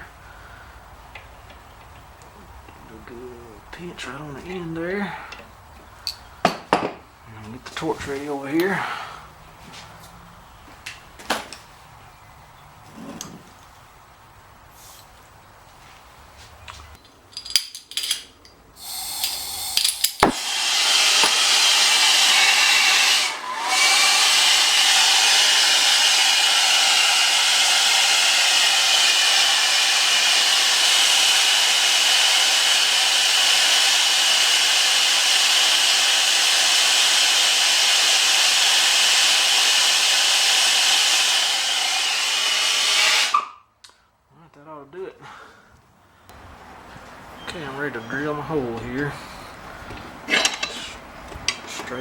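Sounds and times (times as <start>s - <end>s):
torch flame hissing: 18.8s - 24.5s
torch lighting with a pop: 19.2s - 21.5s.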